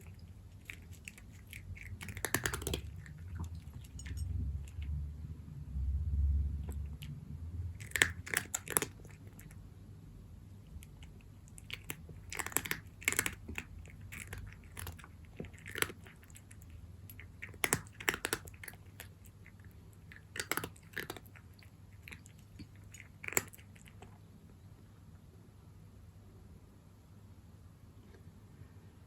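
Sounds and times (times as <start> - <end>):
cat chewing dry kibble: 0.0 - 5.0, 6.5 - 9.7, 10.4 - 24.4.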